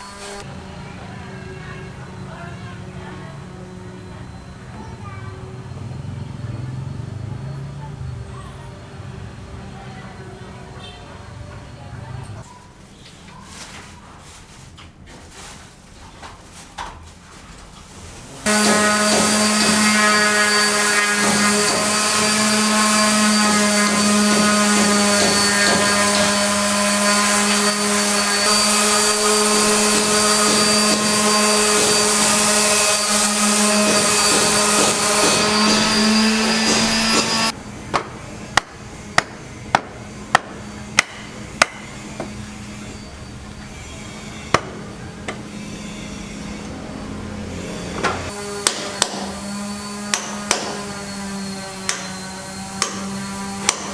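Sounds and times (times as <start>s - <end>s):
electric power tool whining: 0.0s - 4.7s, 18.4s - 53.9s
sharp hammer blows: 23.4s - 42.4s.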